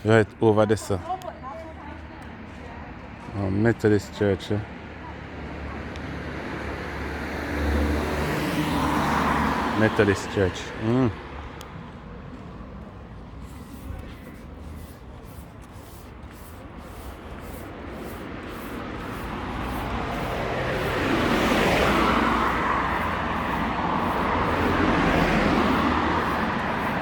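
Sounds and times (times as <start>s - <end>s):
vehicle passing: 6.1s - 11.6s, 12.5s - 27.0s.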